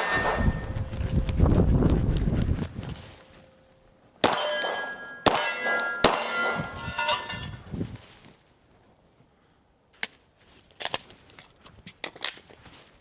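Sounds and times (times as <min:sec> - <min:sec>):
steel target ringing clang: 0:00.0 - 0:00.9, 0:04.2 - 0:07.6
pistol shots: 0:04.2 - 0:06.7.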